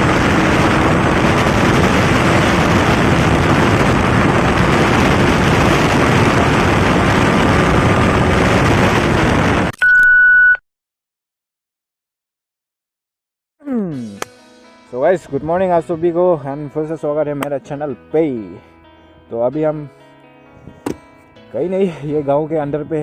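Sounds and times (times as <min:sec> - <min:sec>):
steady high beep: 0:09.8 - 0:10.6.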